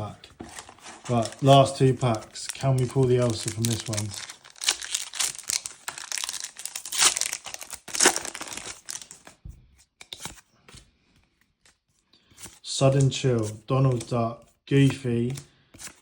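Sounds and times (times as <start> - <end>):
wrapper crinkling and tearing: 0.4 - 9.4.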